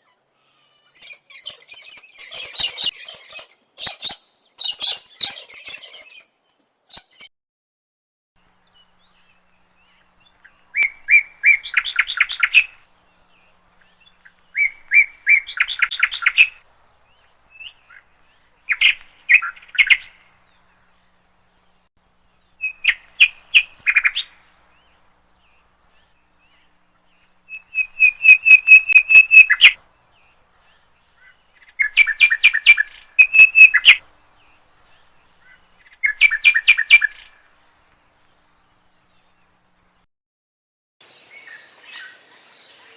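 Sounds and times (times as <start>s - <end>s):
songbird singing: 0.0s - 7.3s, 24.6s - 37.4s, 41.0s - 42.9s.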